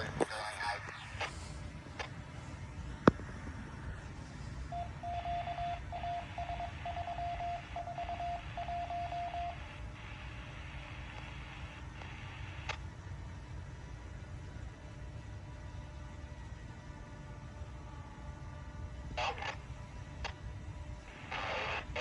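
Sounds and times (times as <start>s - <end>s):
radio hiss: 0.0s - 3.1s, 9.5s - 12.8s, 19.0s - 19.7s, 21.0s - 22.0s
beep tone pulses: 4.7s - 9.6s.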